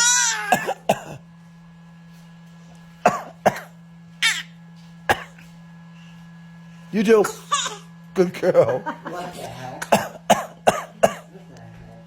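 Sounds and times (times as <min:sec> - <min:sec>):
baby fake coughing: 0:00.0 - 0:01.2, 0:03.0 - 0:05.4, 0:07.2 - 0:07.9, 0:09.8 - 0:11.3.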